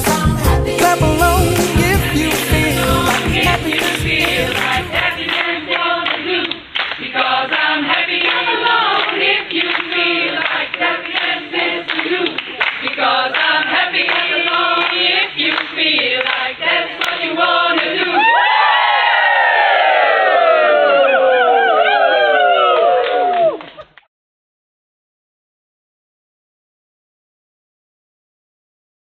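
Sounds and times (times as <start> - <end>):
rhythmic hand clapping: 0.0 - 18.1
group singing in chorus: 0.0 - 18.3
shouting and cheering: 18.1 - 23.7.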